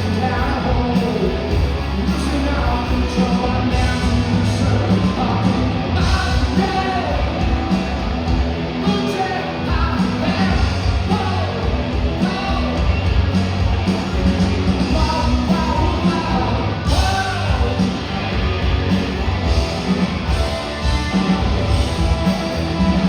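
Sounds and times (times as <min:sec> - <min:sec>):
live rock band playing: 0:00.0 - 0:23.0
person singing: 0:14.9 - 0:17.9.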